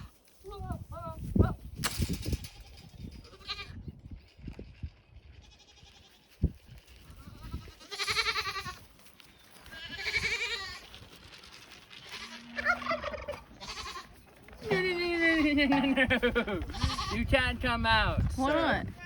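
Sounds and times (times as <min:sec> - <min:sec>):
goat bleating: 0:02.5 - 0:03.8, 0:05.4 - 0:06.2, 0:07.0 - 0:08.8, 0:09.7 - 0:11.0, 0:12.0 - 0:16.0, 0:16.6 - 0:17.3.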